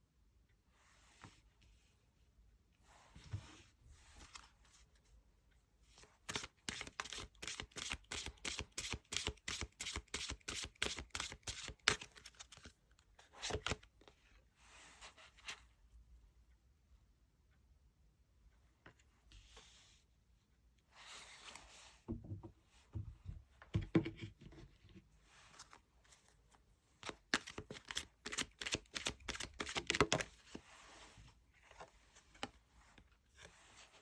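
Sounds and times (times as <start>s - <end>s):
cards shuffled by hand: 6.3s - 12.8s, 27.0s - 30.6s.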